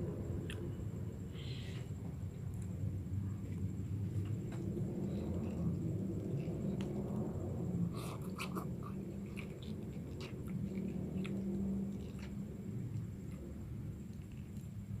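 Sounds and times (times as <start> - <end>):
steady low hum: 0.0 - 15.0
person chewing noodles: 7.9 - 14.9.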